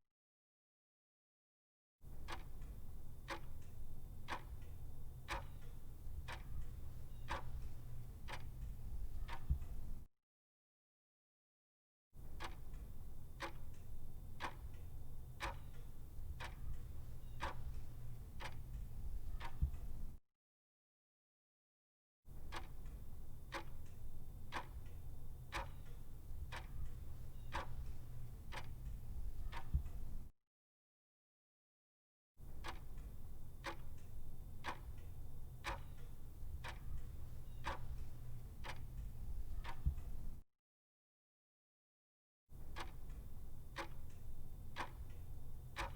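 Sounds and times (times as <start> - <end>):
low steady hum: 2.7 - 10.0, 12.8 - 20.2, 22.9 - 30.3, 33.0 - 40.4
regular ticking: 4.3 - 9.8, 14.4 - 20.0, 23.5 - 30.1, 33.6 - 40.2
sharp ticks: 22.5 - 30.1, 32.6 - 40.2, 43.8 - 44.2.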